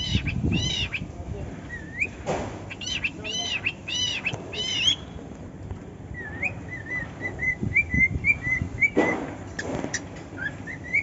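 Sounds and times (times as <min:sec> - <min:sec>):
cockatiel whistling: 0:06.2 - 0:09.2, 0:10.4 - 0:11.0.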